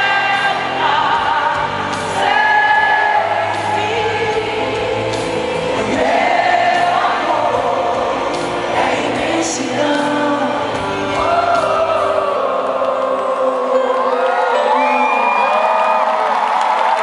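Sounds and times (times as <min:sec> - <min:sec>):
voices singing melody: 0:00.0 - 0:15.7
crowd singing along: 0:00.0 - 0:16.2
live band playing ballad: 0:00.0 - 0:16.2.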